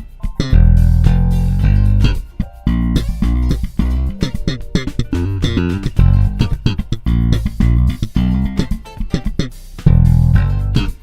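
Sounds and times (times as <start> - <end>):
slap bass funk line: 0.3 - 11.0.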